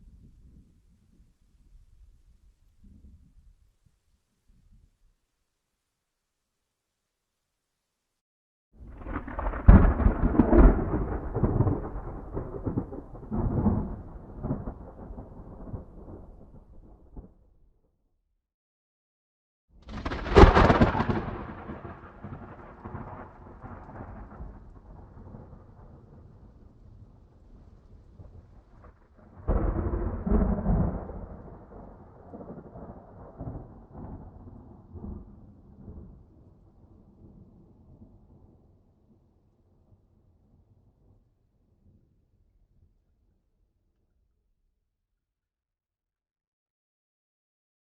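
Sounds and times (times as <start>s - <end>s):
thunder cracks and rumble: 8.8s - 17.4s, 19.8s - 38.8s.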